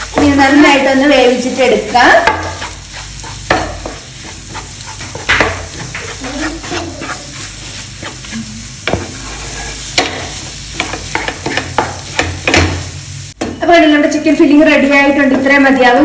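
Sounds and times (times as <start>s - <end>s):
filling sizzling in a frying pan: 0.0s - 16.0s
spoon scraping a pan: 1.9s - 12.6s.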